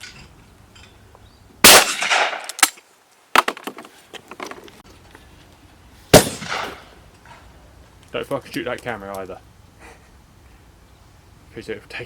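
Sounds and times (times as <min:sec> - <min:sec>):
shotgun blasts with echo: 0:01.6 - 0:02.6, 0:06.1 - 0:06.9.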